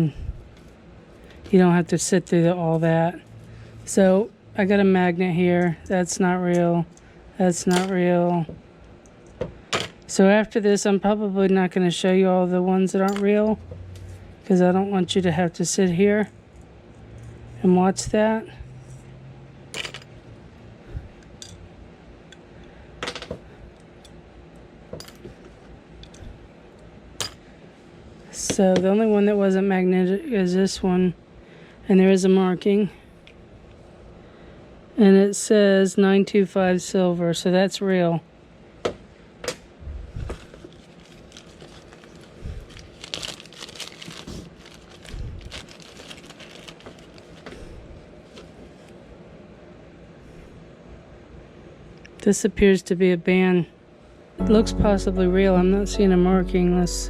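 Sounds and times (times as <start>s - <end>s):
crinkling: 40.3s - 47.6s.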